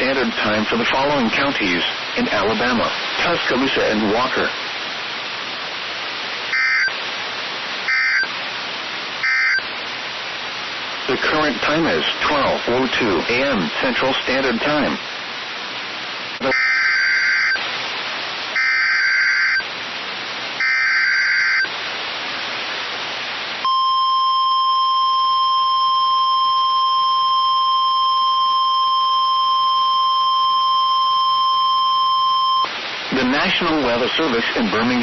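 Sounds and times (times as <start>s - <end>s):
radio hiss: 0.0s - 35.0s
screechy digital data bursts: 6.5s - 6.9s, 7.9s - 8.3s, 9.2s - 9.6s, 16.4s - 17.6s, 18.6s - 19.6s, 20.6s - 21.7s
steady warning alarm tone: 6.5s - 7.0s, 7.9s - 8.3s, 9.2s - 9.6s, 16.4s - 17.6s, 18.6s - 19.6s, 20.6s - 21.7s, 23.6s - 32.7s.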